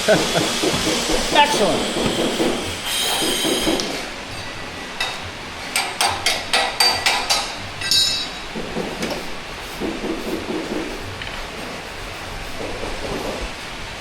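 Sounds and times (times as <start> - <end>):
hammer striking metal: 0.1 - 11.0.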